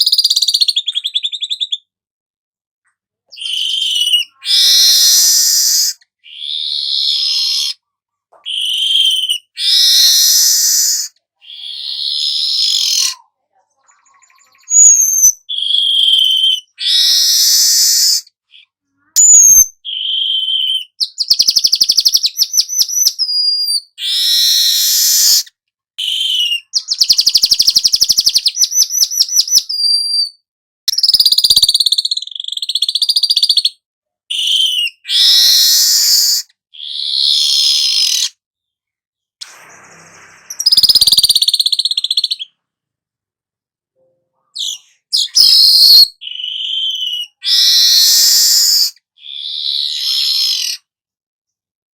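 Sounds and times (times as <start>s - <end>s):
weaver bird chattering song: 0.0s - 1.8s, 13.8s - 25.4s, 26.0s - 30.3s, 30.9s - 33.7s, 40.5s - 42.5s, 44.6s - 50.8s.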